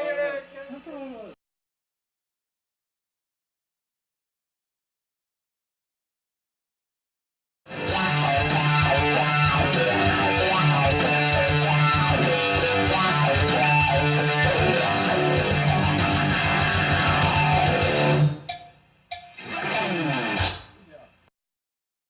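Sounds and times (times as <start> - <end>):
bass guitar: 7.7 - 18.4, 19.4 - 20.7
electric guitar: 7.7 - 18.5, 19.3 - 20.8.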